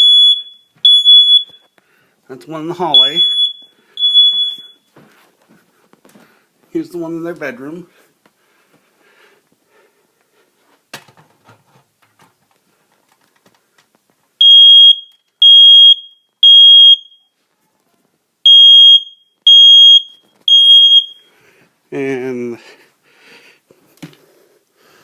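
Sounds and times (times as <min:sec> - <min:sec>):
smoke alarm beeps: 0:00.0 - 0:01.8, 0:02.9 - 0:05.0, 0:14.4 - 0:17.3, 0:18.4 - 0:21.3.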